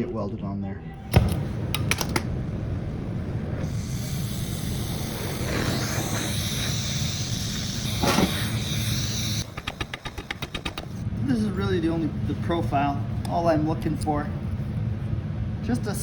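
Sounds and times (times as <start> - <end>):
shop machine rumbling: 1.0 - 13.0
sharp clicks: 1.1 - 2.4, 7.6 - 11.0
hiss with high whine: 2.3 - 11.0.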